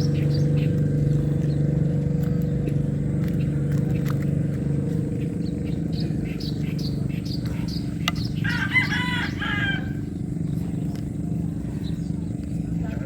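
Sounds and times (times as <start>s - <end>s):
steady low hum: 0.0s - 13.0s
rooster crowing: 8.4s - 10.1s.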